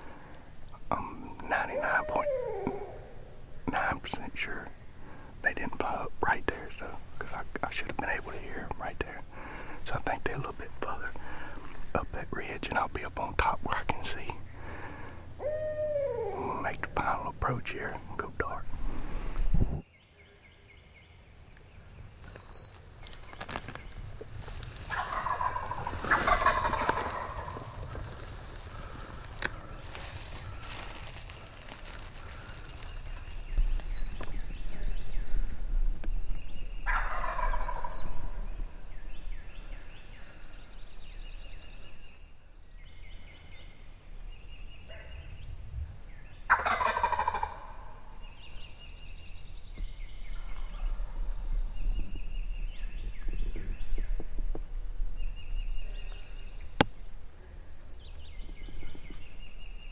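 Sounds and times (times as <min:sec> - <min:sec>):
songbirds chirping: 0:00.0 - 0:59.9
turkey gobbling: 0:24.9 - 0:27.9, 0:36.8 - 0:38.2, 0:46.5 - 0:48.0.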